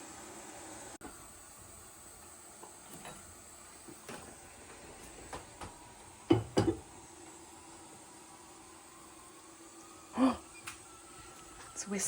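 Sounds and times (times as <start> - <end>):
metal cookware clanking: 2.8 - 3.4, 6.3 - 6.9.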